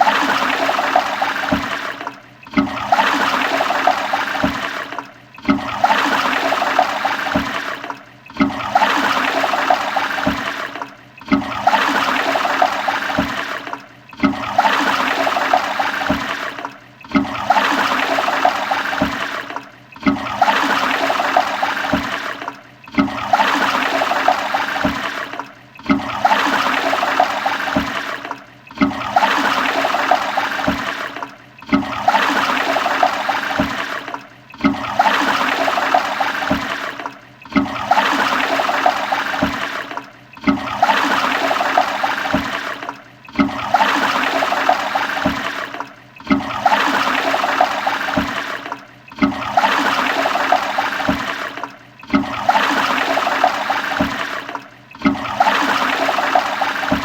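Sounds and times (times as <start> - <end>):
toilet flushing: 0.0 - 57.0.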